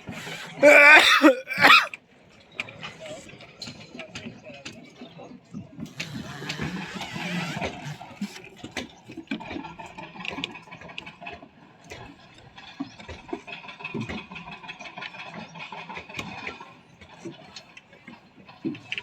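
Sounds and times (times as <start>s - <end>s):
engine running: 5.9s - 8.5s.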